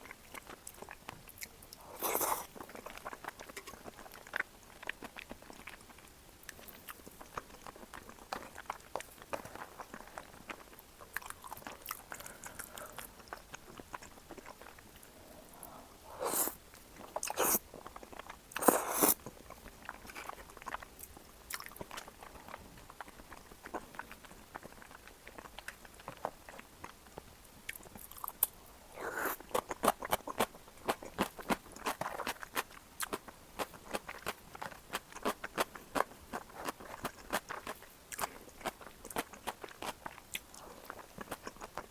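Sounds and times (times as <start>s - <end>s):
person chewing and biting food: 0.2s - 27.0s, 27.7s - 41.9s.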